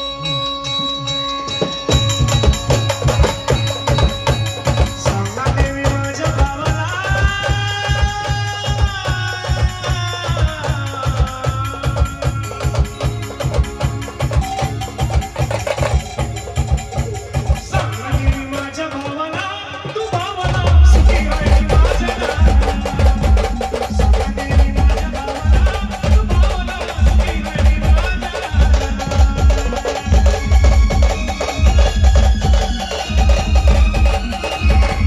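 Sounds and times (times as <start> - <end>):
steady drum beat: 1.6 - 35.0.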